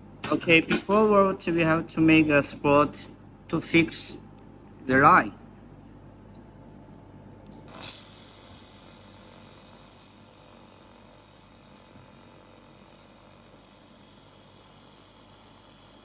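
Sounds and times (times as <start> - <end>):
laser welder hissing: 7.7 - 16.0.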